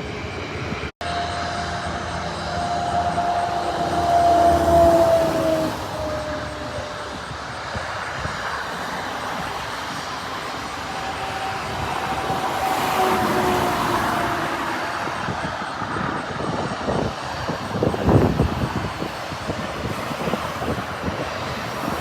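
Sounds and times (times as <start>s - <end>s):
faint engine whine: 0.0s - 22.0s
jet engines rumbling: 0.0s - 22.0s.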